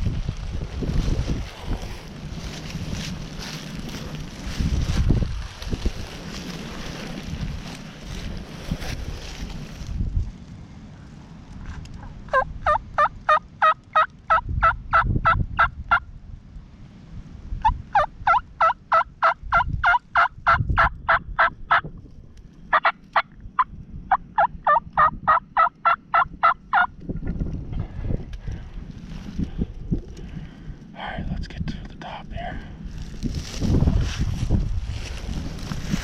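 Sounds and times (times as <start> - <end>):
turkey yelping: 12.3 - 15.0, 17.6 - 21.6, 22.7 - 23.0, 24.4 - 26.9.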